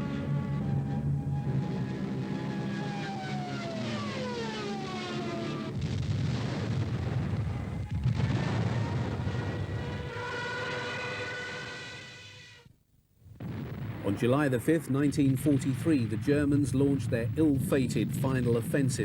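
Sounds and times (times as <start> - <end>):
aircraft engine drone: 0.0 - 7.9
steady whine: 0.0 - 12.1.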